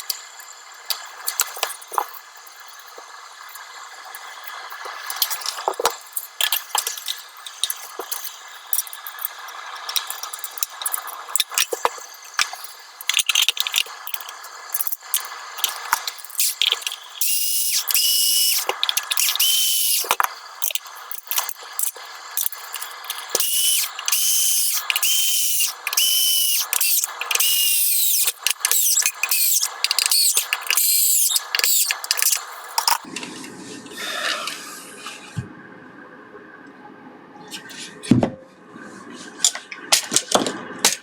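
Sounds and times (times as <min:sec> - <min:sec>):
electric power tool whirring: 0:16.3 - 0:20.2, 0:23.2 - 0:33.1.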